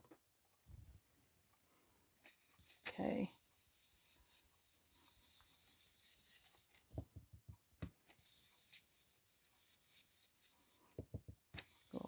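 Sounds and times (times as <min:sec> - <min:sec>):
soft knocks on table: 0:06.9 - 0:08.0, 0:11.0 - 0:11.4.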